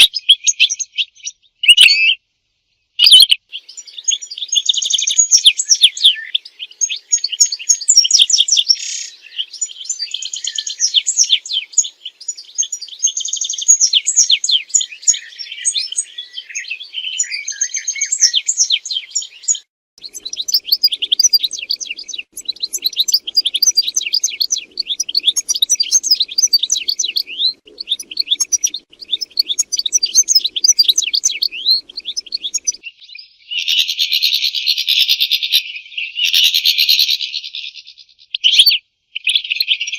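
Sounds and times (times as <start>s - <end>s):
goldfinch twittering song: 3.0s - 32.9s.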